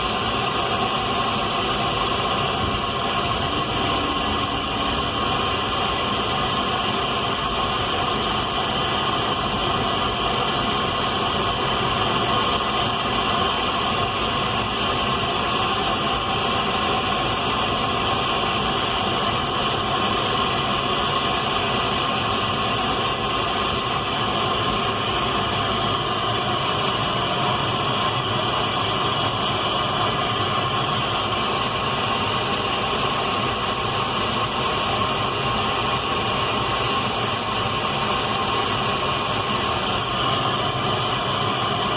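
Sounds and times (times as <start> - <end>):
radio static hiss: 0.0 - 10.8
faint steady tones: 0.0 - 12.0.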